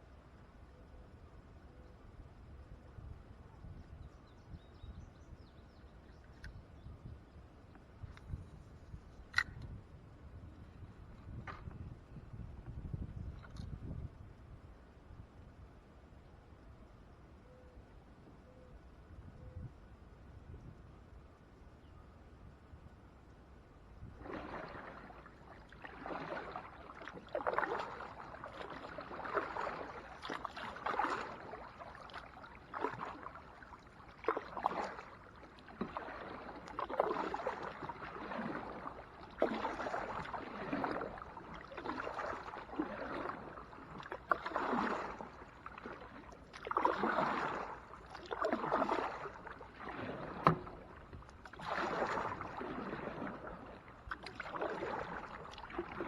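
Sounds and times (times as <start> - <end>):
paddle strokes splashing water: 24.0 - 56.0.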